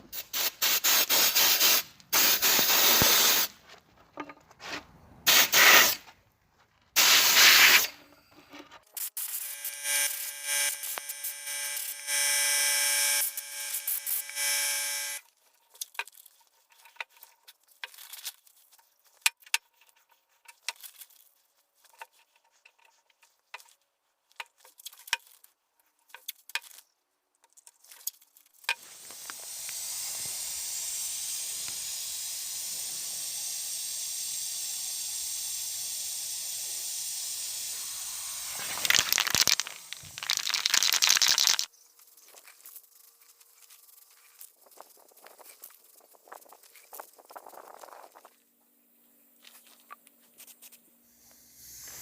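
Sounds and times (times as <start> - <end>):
steady hiss: 0.0 - 3.6, 7.0 - 7.9, 28.8 - 41.7
rough noise: 37.8 - 41.7.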